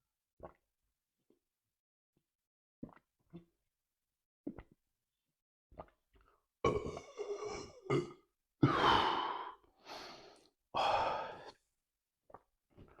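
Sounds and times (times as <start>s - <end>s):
man's breathy vocal sounds: 8.6s - 11.5s.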